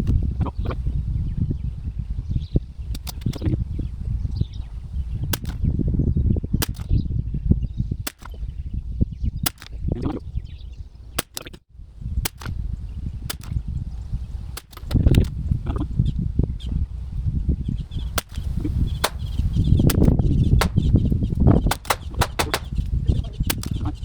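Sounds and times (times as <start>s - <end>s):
wind rumble on microphone: 0.0s - 24.0s
rifle shots cracking: 19.0s - 19.5s, 20.6s - 21.0s, 21.7s - 22.8s.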